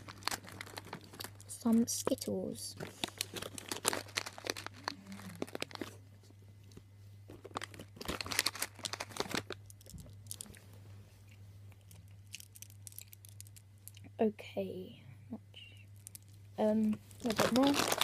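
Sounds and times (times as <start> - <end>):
sweet packets crinkling and tearing: 0.0 - 2.2, 2.8 - 6.0, 7.3 - 10.6, 11.8 - 14.1, 15.9 - 16.4, 17.1 - 18.0.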